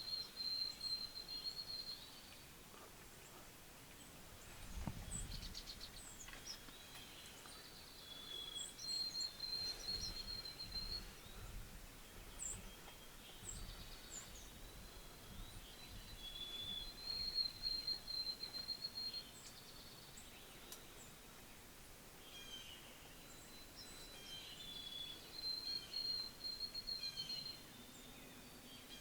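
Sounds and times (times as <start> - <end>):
songbirds chirping and singing: 0.0 - 29.0
wind rumble on microphone: 4.3 - 6.3, 9.4 - 17.9.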